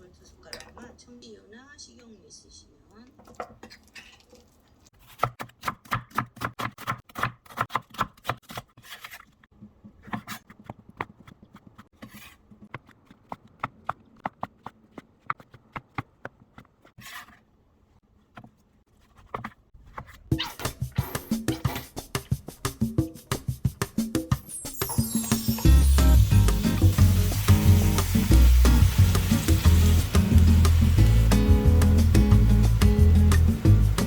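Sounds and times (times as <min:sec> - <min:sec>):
knife chopping on cutting board: 0:05.0 - 0:09.3.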